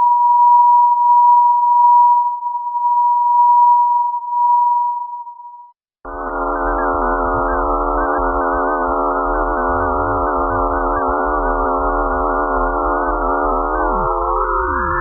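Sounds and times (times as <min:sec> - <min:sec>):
wavering electronic tones: 0:06.1 - 0:15.0.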